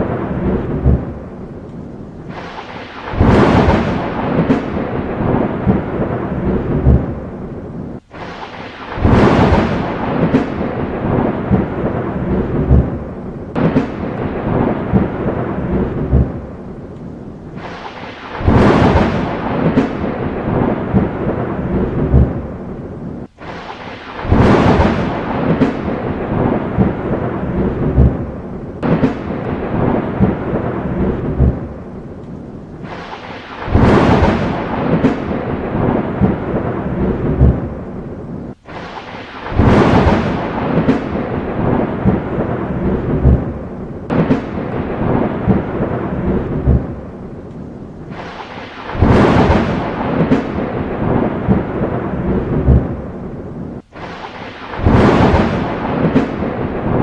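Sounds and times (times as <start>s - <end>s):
steady rain: 0.0s - 57.0s
thunder cracks and rumble: 0.0s - 57.0s.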